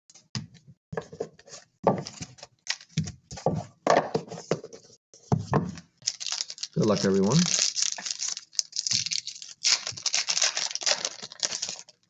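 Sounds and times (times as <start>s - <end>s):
cardboard and wrappers rustling: 6.0s - 12.0s.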